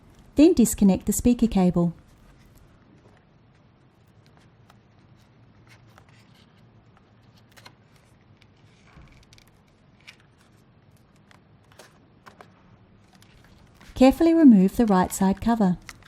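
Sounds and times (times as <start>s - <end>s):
low steady hum: 0.0s - 5.8s, 9.6s - 16.0s.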